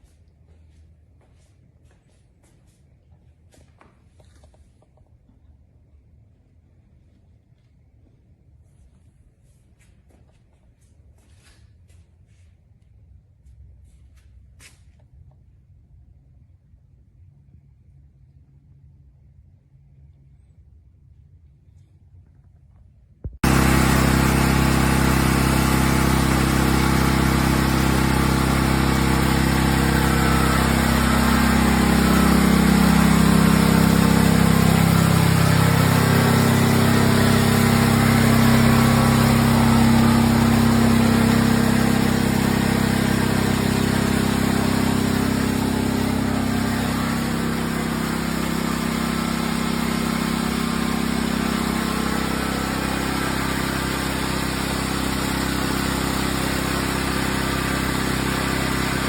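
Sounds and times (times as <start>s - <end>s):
engine running: 23.3s - 59.0s.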